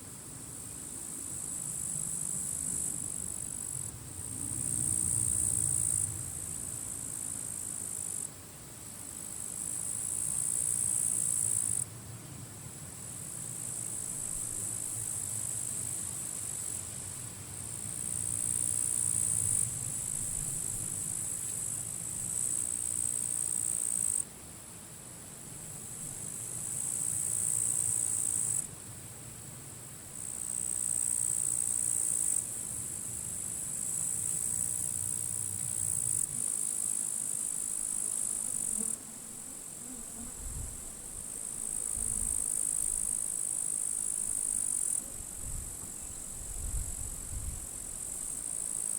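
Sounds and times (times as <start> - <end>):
low wind noise: 45.1 - 48.0.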